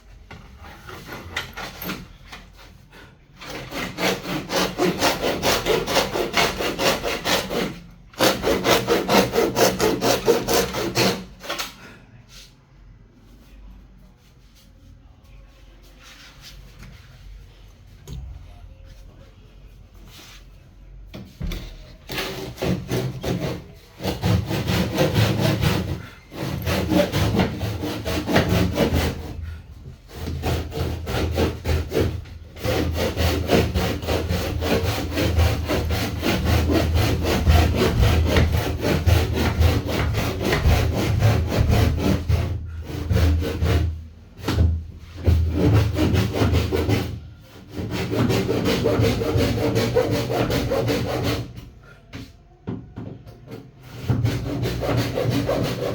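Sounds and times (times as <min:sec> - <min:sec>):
wood being sawn: 0:03.4 - 0:11.6, 0:22.1 - 0:29.4, 0:30.1 - 0:44.0, 0:45.1 - 0:51.5, 0:54.0 - 0:55.9.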